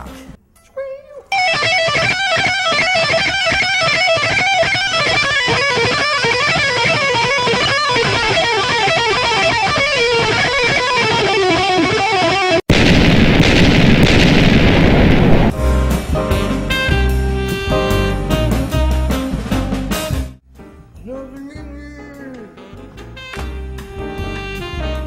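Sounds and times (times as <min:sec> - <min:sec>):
fast electric guitar lead: 0:01.3 - 0:13.8
loud rushing noise: 0:12.7 - 0:16.3.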